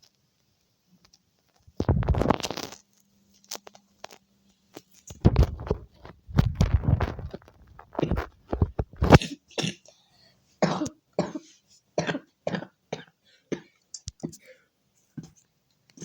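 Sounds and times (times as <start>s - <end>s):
person coughing: 9.0s - 9.9s, 10.6s - 14.6s.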